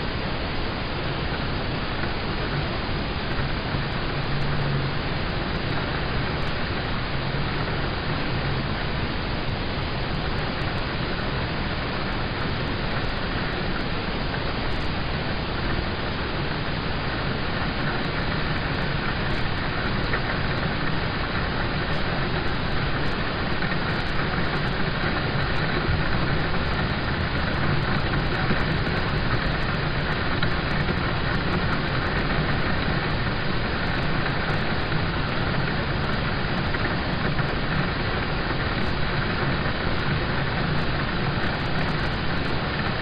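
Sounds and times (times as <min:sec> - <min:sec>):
rain on car roof: 0:17.6 - 0:42.9.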